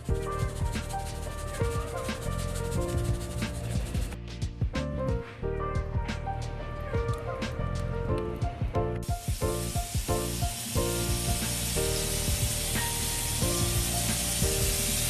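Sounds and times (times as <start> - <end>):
background music with steady beat: 0.0 - 15.0
steaks sizzling on a grill: 9.0 - 15.0.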